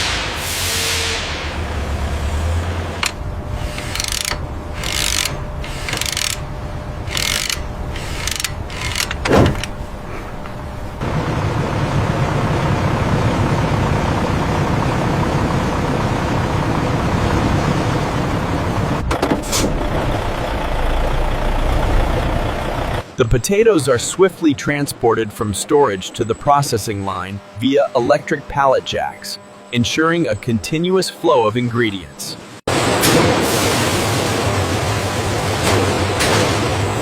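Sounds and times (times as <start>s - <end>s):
low mechanical rumble: 0.0s - 23.2s
hissing bursts with clicks: 3.0s - 6.4s.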